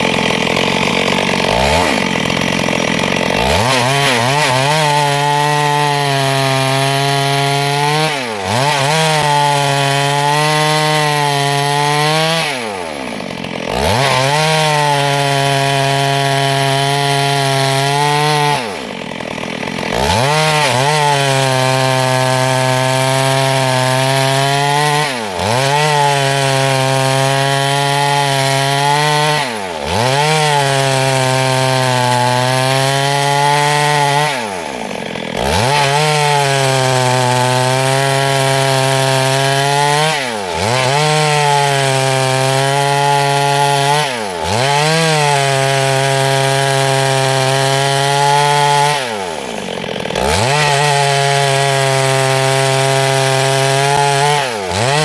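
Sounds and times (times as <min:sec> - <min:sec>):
chainsaw ripping wood: 0:00.0 - 0:55.0.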